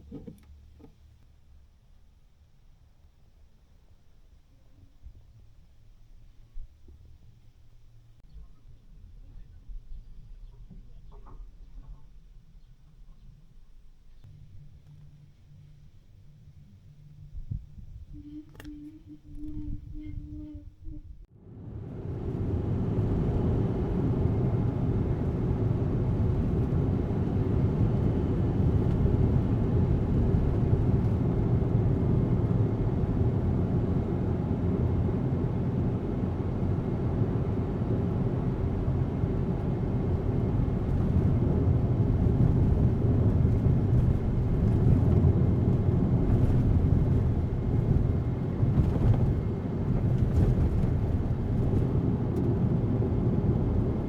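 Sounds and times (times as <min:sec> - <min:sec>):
road and engine rumble: 0:00.0 - 0:54.0.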